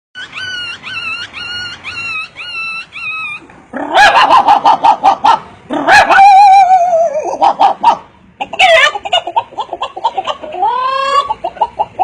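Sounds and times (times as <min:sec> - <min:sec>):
man imitating dog yips: 0:00.2 - 0:09.2.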